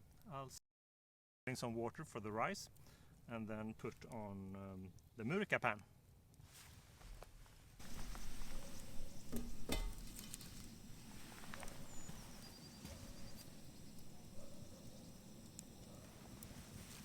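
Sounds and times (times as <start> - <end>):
campfire crackle: 2.7 - 5.2, 7.8 - 17.0
light rustling: 6.4 - 17.0
cookware knocking: 9.3 - 10.1.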